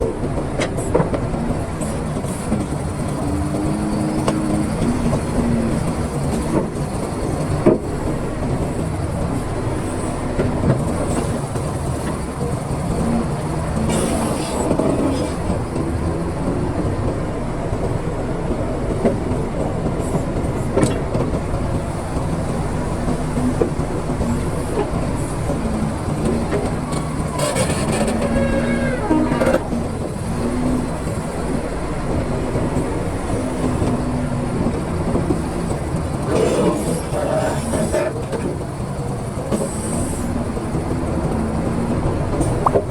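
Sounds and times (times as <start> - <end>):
excavator diesel engine running: 0.0 - 42.9.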